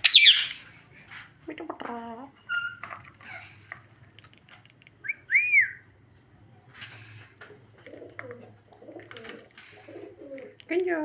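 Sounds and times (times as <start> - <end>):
parrot whistling: 0.0 - 0.6
faint rustles and clicks: 6.6 - 10.9.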